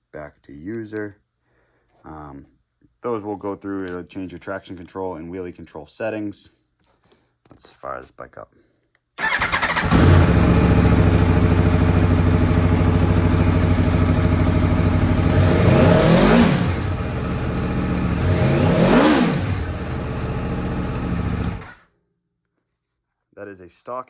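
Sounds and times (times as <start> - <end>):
motorcycle engine idling and revving: 9.2 - 21.8.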